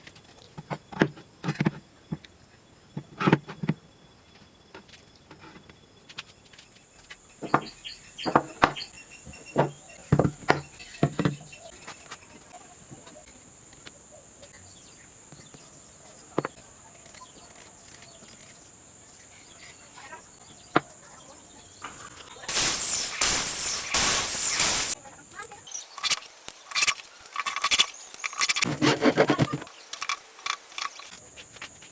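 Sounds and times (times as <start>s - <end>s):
high-pitched whine: 22.5s - 25.0s.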